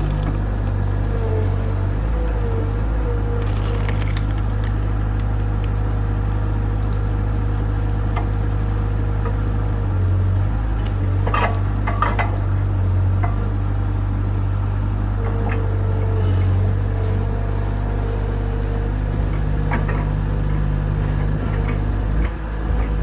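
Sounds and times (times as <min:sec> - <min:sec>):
skid steer engine running: 0:00.0 - 0:23.0.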